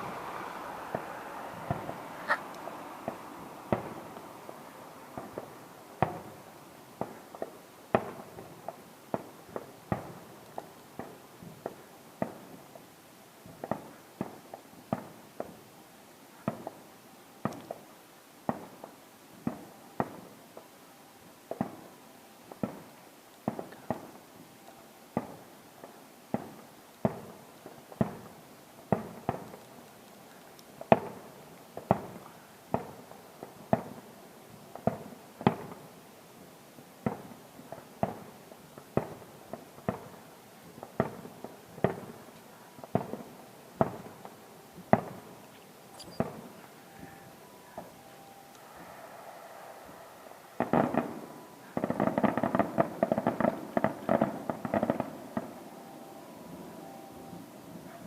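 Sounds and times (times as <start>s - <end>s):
fireworks bursting: 0.0s - 15.7s, 21.4s - 58.0s.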